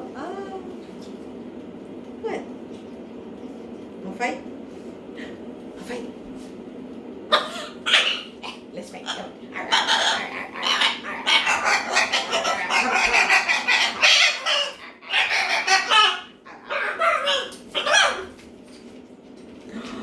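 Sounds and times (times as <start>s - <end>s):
macaw squawking harshly: 9.6s - 18.2s.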